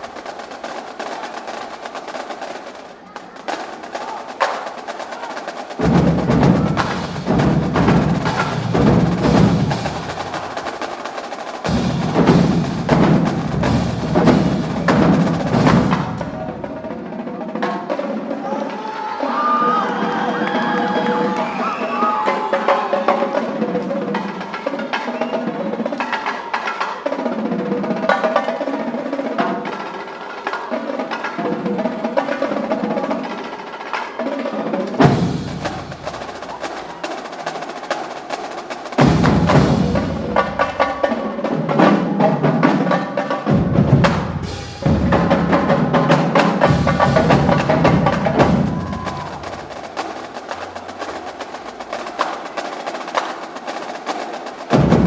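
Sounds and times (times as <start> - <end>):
snare drums rolling and clicking: 0.0 - 55.0
tenor and bass drums: 5.8 - 16.9, 35.0 - 37.8, 38.5 - 41.1, 43.5 - 53.1.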